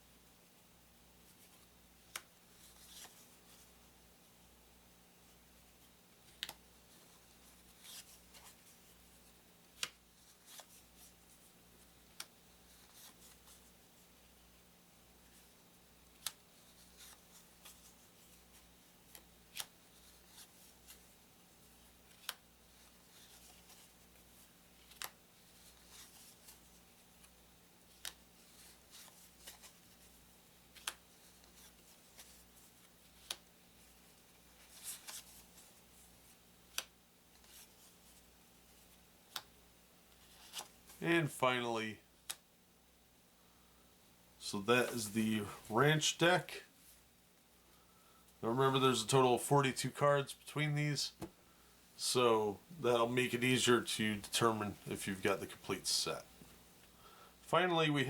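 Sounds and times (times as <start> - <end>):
paper cards rustling: 6.2 - 13.8, 15.3 - 39.5, 40.1 - 41.0, 44.7 - 45.7.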